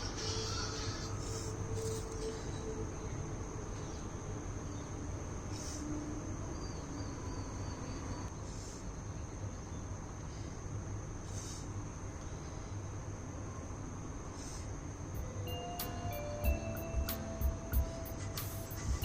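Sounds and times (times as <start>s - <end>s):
high-pitched insect trill: 0.0s - 8.3s, 14.4s - 19.0s
loud insect chirp: 0.0s - 19.0s
low hum: 15.1s - 19.0s.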